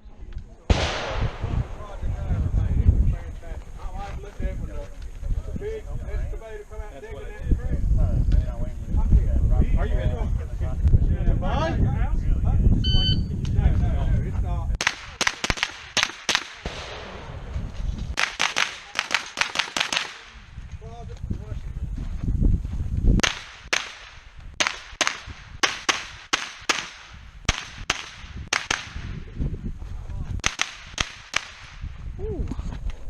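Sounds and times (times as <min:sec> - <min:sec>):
rifle shots: 0:00.7 - 0:02.4, 0:14.8 - 0:20.5, 0:23.2 - 0:29.2, 0:30.4 - 0:31.9.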